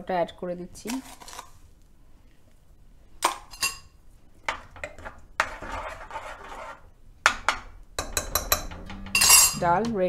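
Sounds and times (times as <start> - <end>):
spoon scraping and stirring: 3.4 - 9.7
spoon knocking against a pot: 7.2 - 9.6.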